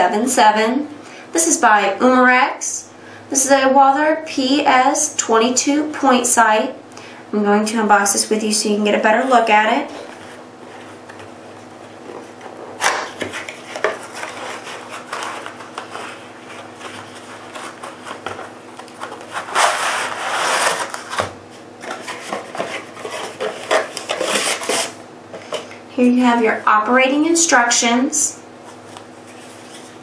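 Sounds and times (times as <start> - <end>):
cardboard rubbing and rustling: 9.2 - 25.0
rasping cardboard slide: 12.2 - 21.3.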